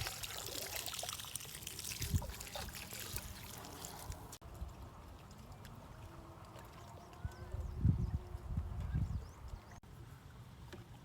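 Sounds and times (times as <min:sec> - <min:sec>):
water trickling and splashing: 0:00.0 - 0:11.0.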